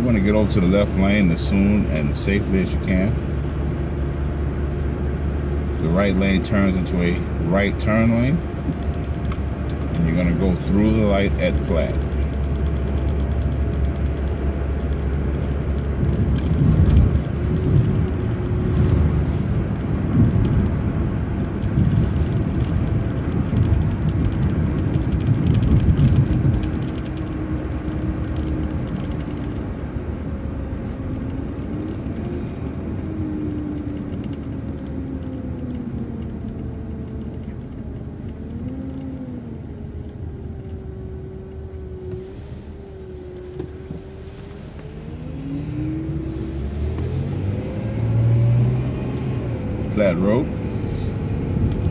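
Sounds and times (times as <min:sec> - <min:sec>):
bus engine and road rumble: 0:00.0 - 0:51.9
faint whine sliding in pitch: 0:30.2 - 0:51.9.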